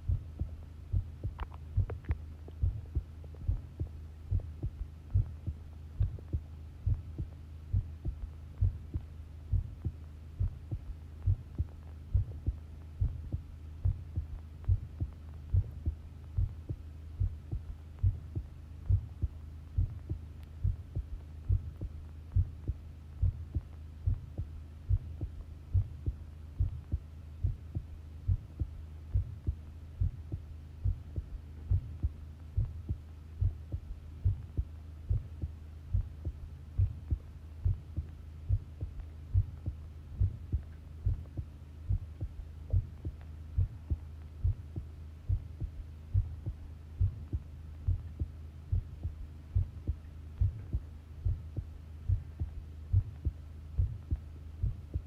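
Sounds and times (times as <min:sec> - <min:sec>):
heartbeat double thud: 0:00.0 - 0:55.0
low hum: 0:00.0 - 0:55.0.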